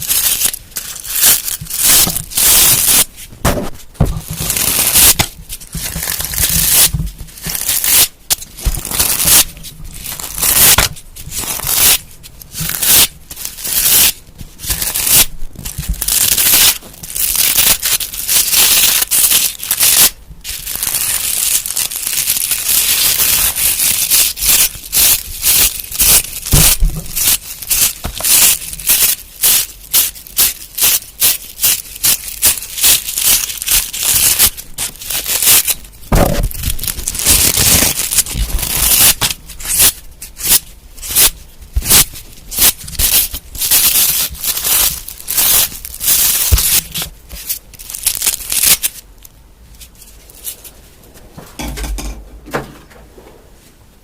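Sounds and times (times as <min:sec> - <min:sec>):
scratching and rustling strokes: 0:00.0 - 0:49.1, 0:49.7 - 0:51.6
dull thud: 0:03.4 - 0:04.3, 0:36.1 - 0:36.5.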